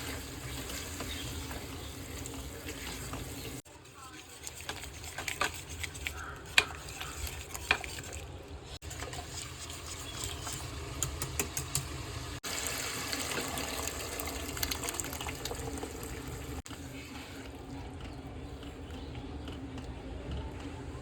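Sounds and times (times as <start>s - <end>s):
water gushing: 12.1s - 16.6s.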